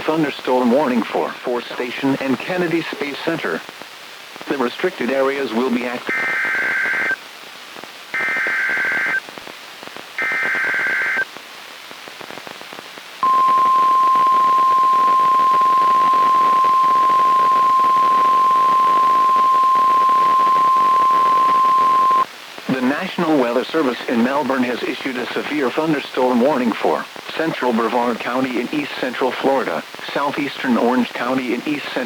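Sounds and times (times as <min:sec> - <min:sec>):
radio hiss: 0:00.0 - 0:32.0
data tone bursts: 0:13.2 - 0:22.2
steady warning alarm tone: 0:13.2 - 0:22.2.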